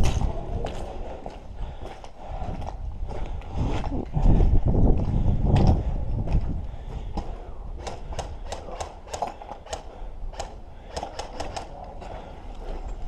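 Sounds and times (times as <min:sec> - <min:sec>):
airsoft guns firing: 0:07.8 - 0:11.8.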